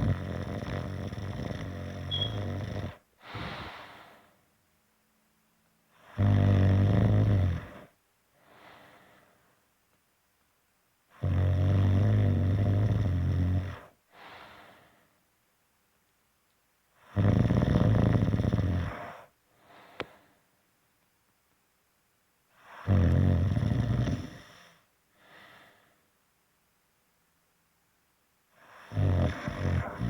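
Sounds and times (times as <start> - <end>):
loud snoring: 0.0 - 3.0, 6.0 - 8.0, 11.1 - 14.0, 17.0 - 19.3, 22.6 - 24.8, 28.6 - 30.0
breath out: 3.2 - 4.4.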